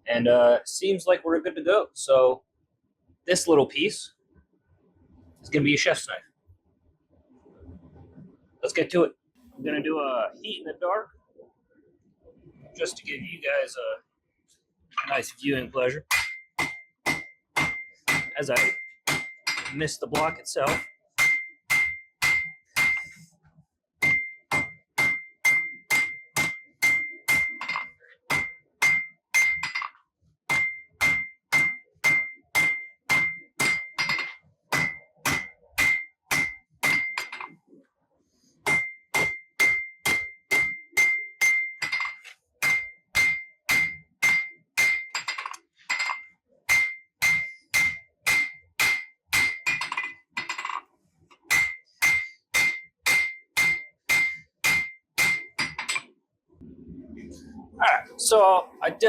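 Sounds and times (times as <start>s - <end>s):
hammer striking steel on anvil: 16.0s - 23.2s, 24.0s - 29.9s, 30.5s - 37.5s, 38.7s - 50.8s, 51.5s - 56.0s
anvil ringing: 16.1s - 23.2s, 24.0s - 29.9s, 30.5s - 37.5s, 38.7s - 50.8s, 51.5s - 56.0s.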